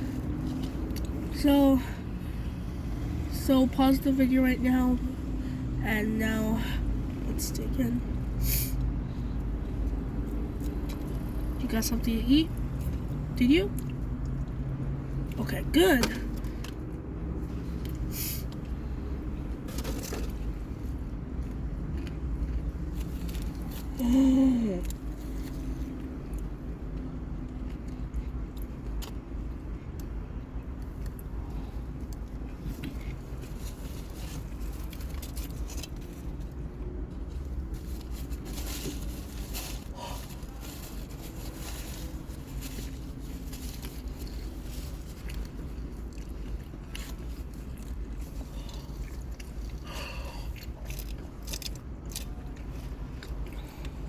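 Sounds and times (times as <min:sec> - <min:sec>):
person chewing sandwich: 0:00.0 - 0:01.3, 0:16.3 - 0:54.0
low steady rumble: 0:00.0 - 0:54.0
person chewing food: 0:20.8 - 0:24.0, 0:39.2 - 0:54.0
crinkly noises: 0:30.7 - 0:54.0.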